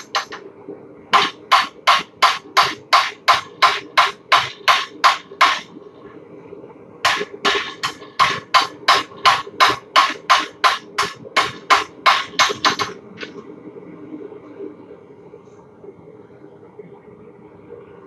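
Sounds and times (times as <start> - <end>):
hammer striking steel on anvil: 0.0 - 0.4, 1.2 - 5.8, 7.1 - 13.4
steady hum: 0.0 - 18.0.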